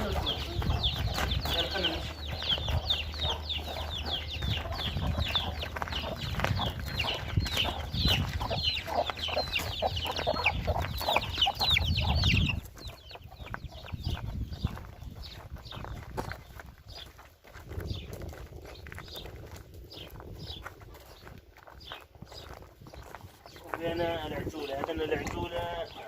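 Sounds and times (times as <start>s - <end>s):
chickens clucking: 0.0s - 26.0s
chicks peeping: 0.0s - 26.0s.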